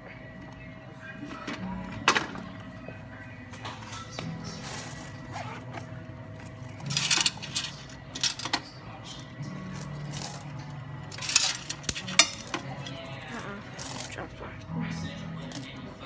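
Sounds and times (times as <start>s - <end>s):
coins clinking and jingling: 3.6s - 5.6s, 6.4s - 14.5s, 15.4s - 15.9s.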